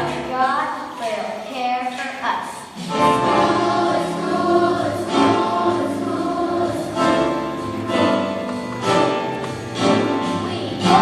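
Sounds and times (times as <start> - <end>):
instrumental accompaniment: 2.6 - 11.0
choir singing gospel: 2.8 - 11.0.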